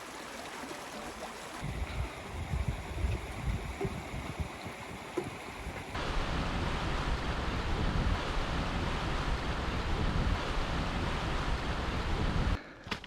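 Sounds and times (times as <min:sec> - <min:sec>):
stream water rushing: 0:00.0 - 0:06.0.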